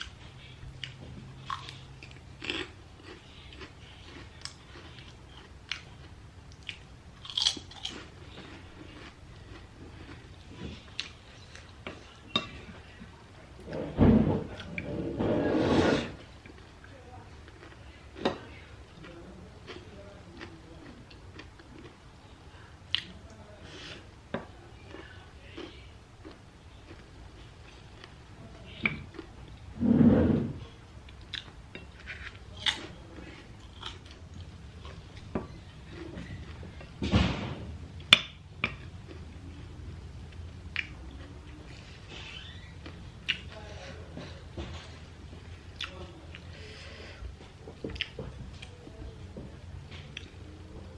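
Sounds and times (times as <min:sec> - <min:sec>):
crunchy chewing of snack: 0:00.0 - 0:12.2, 0:31.1 - 0:37.0
person chewing food: 0:00.0 - 0:13.8, 0:16.2 - 0:22.0, 0:24.7 - 0:29.8, 0:31.0 - 0:37.0, 0:38.0 - 0:43.6, 0:44.2 - 0:48.8, 0:49.9 - 0:50.4.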